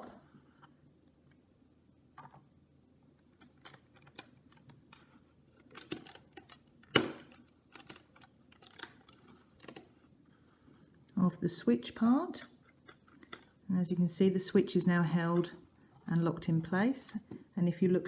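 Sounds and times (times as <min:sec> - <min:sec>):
plastic bricks clicking together: 0:05.6 - 0:09.9.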